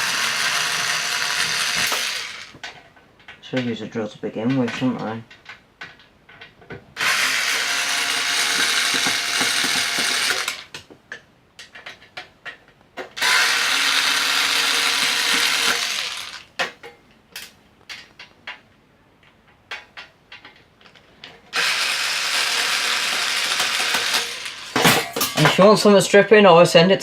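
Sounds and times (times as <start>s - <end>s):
cordless drill driving screws: 0.0s - 2.6s, 7.0s - 10.7s, 13.2s - 16.5s, 21.6s - 24.8s.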